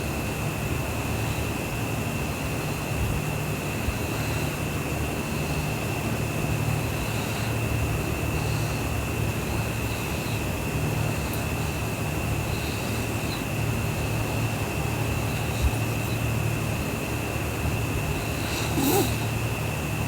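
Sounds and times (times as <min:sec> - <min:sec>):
even hiss: 0:05.3 - 0:20.0.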